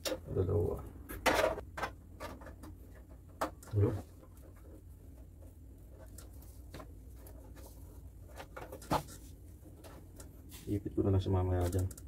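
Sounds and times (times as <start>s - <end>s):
cables and connectors clicking: 11.6s - 12.0s.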